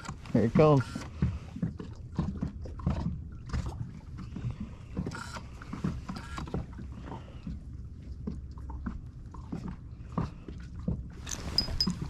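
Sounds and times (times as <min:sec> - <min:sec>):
knocks and bumps on a boat: 0:00.0 - 0:12.0
low steady hum: 0:00.0 - 0:12.0
rustling: 0:11.2 - 0:12.0.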